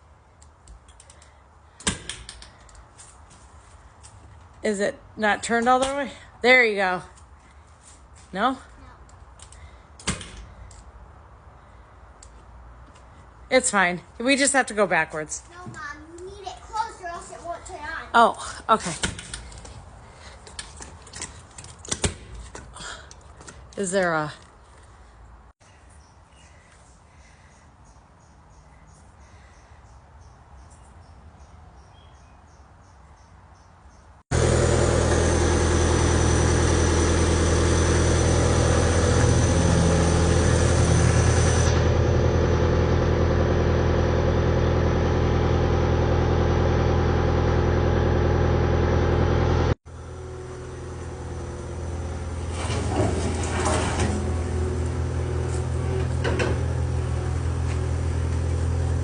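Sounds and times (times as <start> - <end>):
skid steer engine running: 34.3 - 59.0.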